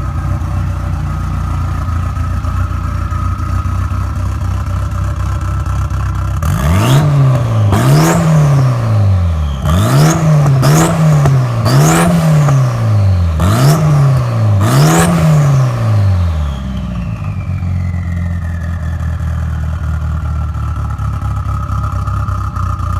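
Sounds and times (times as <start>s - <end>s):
engine idling and revving: 0.0s - 22.9s
high turbo whistle: 16.2s - 19.5s.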